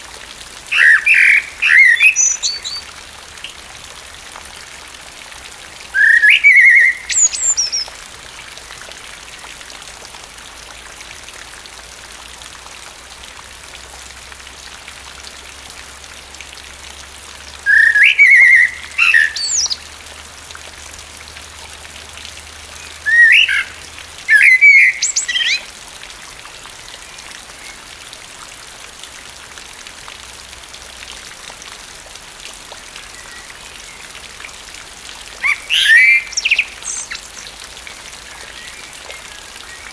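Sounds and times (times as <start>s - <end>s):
rain hiss: 0.0s - 39.9s
blackbird singing: 0.7s - 2.9s, 6.0s - 7.9s, 17.7s - 19.9s, 22.8s - 25.7s, 35.4s - 39.9s.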